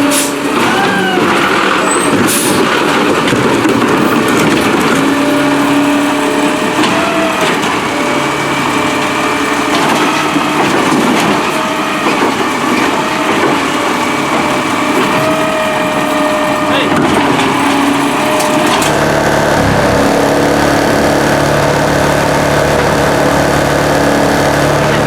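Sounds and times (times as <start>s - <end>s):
squeals and knocks from truck: 0.0s - 8.2s, 9.5s - 20.6s
garbage truck running: 0.0s - 25.0s.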